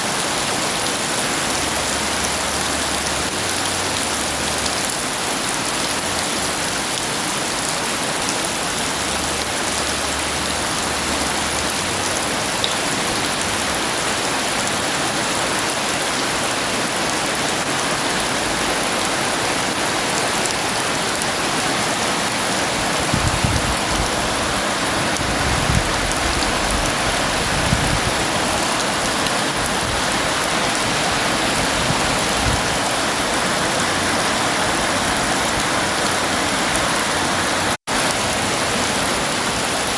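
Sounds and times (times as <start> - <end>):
heavy rain pouring: 0.0 - 39.9
low rumble of thunder: 23.1 - 24.5.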